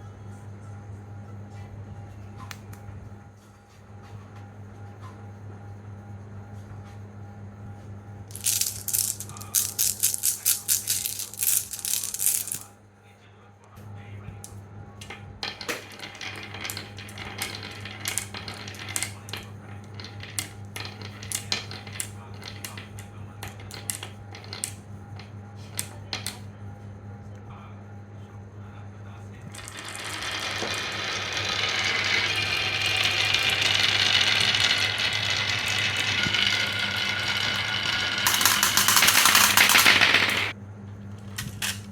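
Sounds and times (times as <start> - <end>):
marbles clattering down wooden run: 8.3 - 12.7, 15.4 - 24.8, 29.5 - 40.6.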